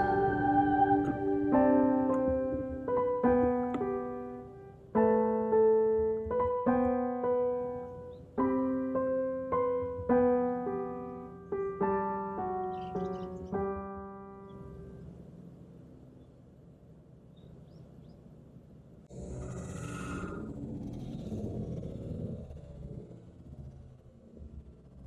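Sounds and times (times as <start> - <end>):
gentle piano melody: 0.0 - 15.6.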